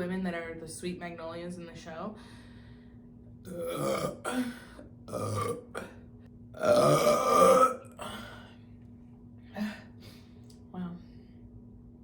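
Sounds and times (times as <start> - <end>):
woman burping loudly: 3.5 - 6.0, 6.6 - 8.4.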